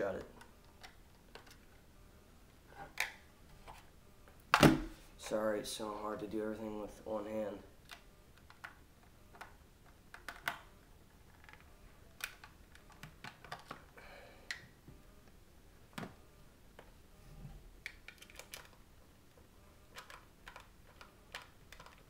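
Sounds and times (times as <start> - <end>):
plastic clicks and scrapes: 19.9 - 22.0.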